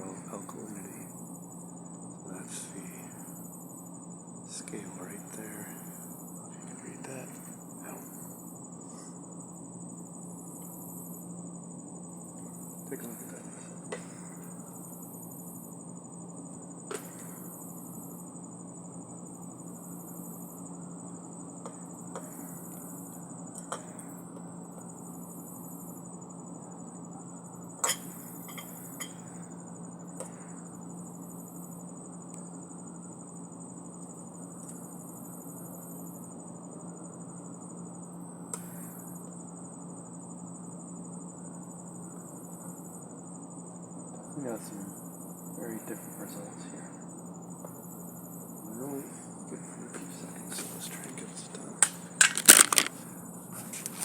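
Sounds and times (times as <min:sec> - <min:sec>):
low steady hum: 0:00.0 - 0:38.9
insects trilling: 0:00.0 - 0:54.0
sharp clicks: 0:51.5 - 0:53.0.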